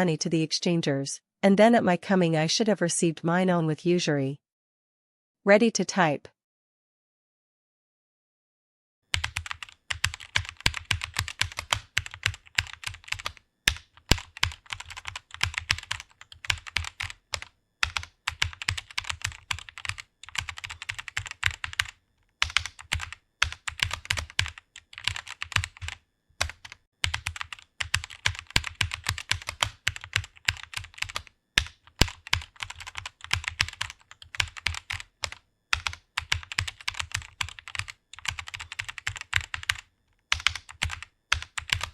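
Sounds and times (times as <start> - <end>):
fast typing on computer keyboard: 9.1 - 41.9.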